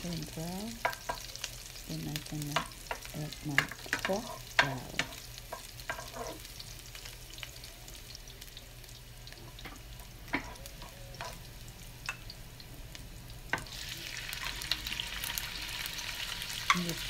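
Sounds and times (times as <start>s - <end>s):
garlic sizzling in hot oil: 0.0s - 17.0s
spatula scraping a pan: 2.9s - 6.6s, 10.3s - 11.4s.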